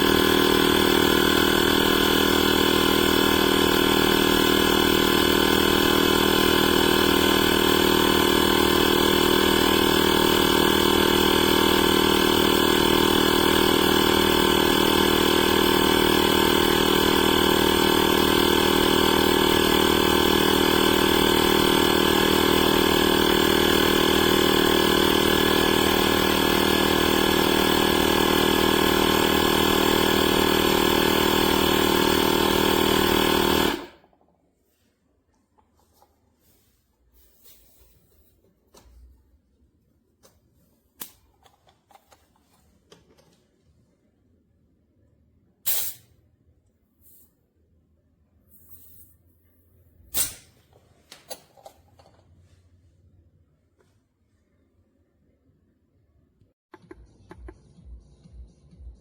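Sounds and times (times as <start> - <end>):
air compressor droning: 0.0 - 34.1.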